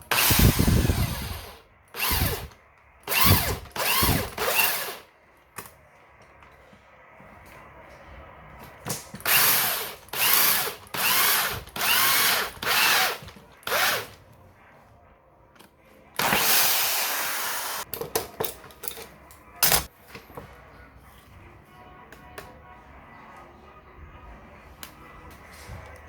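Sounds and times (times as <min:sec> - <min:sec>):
power drill bursts: 0:00.1 - 0:02.5, 0:03.1 - 0:05.0, 0:09.2 - 0:14.1, 0:16.2 - 0:17.8
drill clicks: 0:00.1 - 0:05.0, 0:09.2 - 0:14.1, 0:16.2 - 0:17.8.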